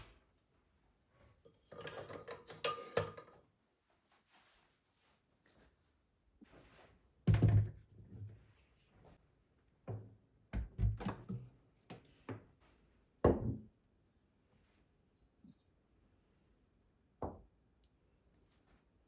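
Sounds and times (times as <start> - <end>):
objects knocking and thudding: 7.2 - 8.3, 9.8 - 12.5, 13.2 - 13.7.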